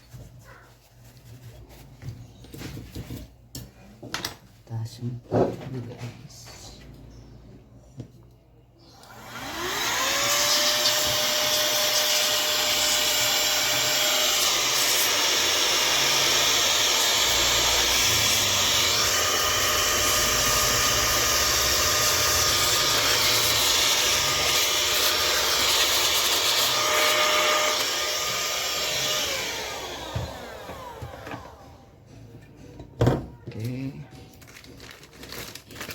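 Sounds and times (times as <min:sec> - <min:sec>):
air blower rushing and whining: 0:09.0 - 0:31.9.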